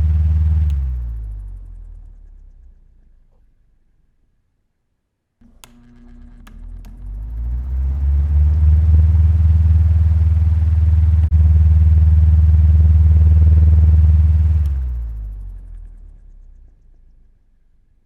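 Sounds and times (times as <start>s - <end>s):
electric fan humming: 0.0s - 1.6s, 5.4s - 15.5s.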